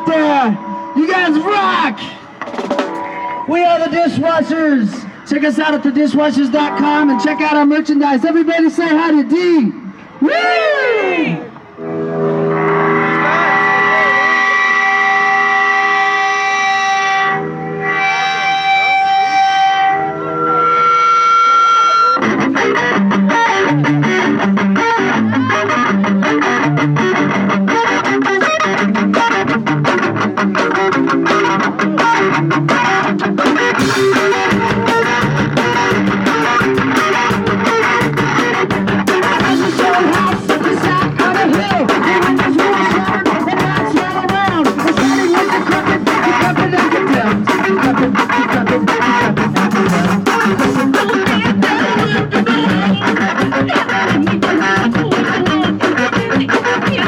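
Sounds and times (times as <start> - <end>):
punk rock band playing live: 0.0 - 7.3, 11.5 - 57.0.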